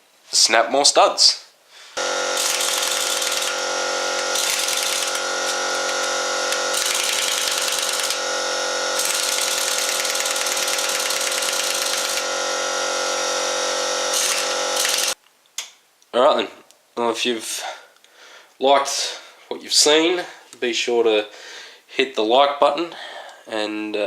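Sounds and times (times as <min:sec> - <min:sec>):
impact driver hammering: 0:02.0 - 0:15.2.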